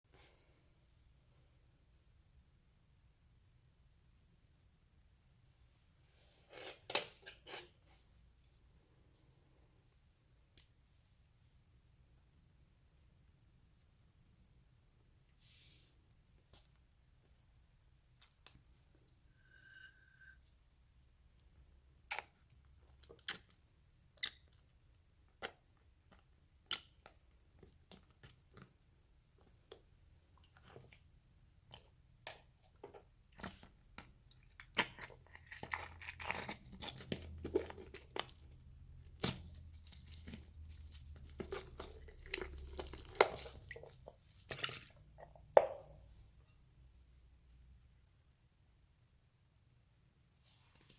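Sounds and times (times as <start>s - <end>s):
slime crunching and squishing: 33.0s - 45.5s
slime clicking and crackling: 35.9s - 44.5s.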